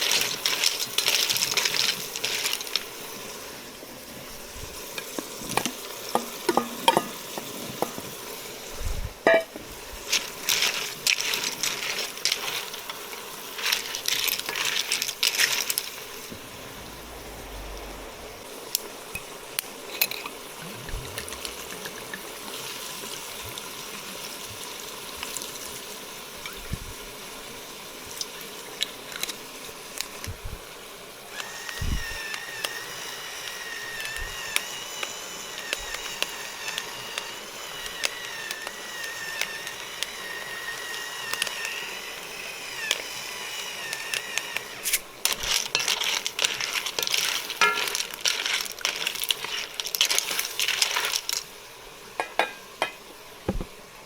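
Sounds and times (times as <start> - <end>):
pan hissing: 0.0 - 25.6, 30.7 - 53.9
sizzling and utensils in pan: 4.8 - 16.0, 31.4 - 53.8
high wavering whine: 16.0 - 23.6.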